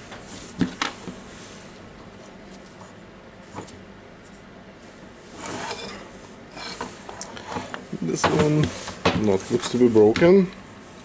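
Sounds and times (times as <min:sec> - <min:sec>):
scraping rustle: 0:05.3 - 0:10.0.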